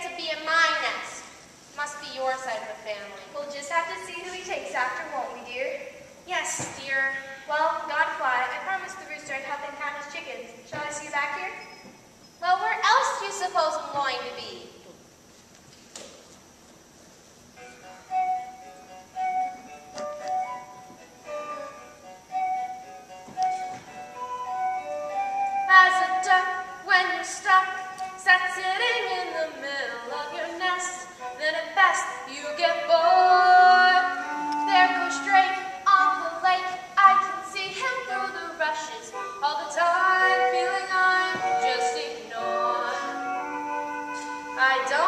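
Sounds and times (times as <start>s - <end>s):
instrumental music with held notes: 17.6s - 26.8s, 29.0s - 45.0s
woman singing slow melody: 25.7s - 43.5s.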